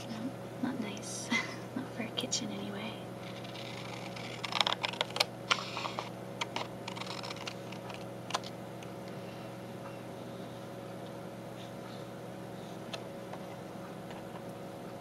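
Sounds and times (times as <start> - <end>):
scissors snipping thick paper: 3.3 - 7.9.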